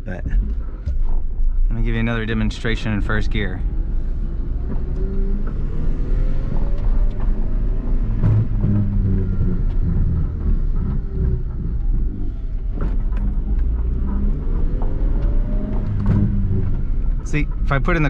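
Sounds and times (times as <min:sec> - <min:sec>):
car engine revving: 0:00.0 - 0:18.0.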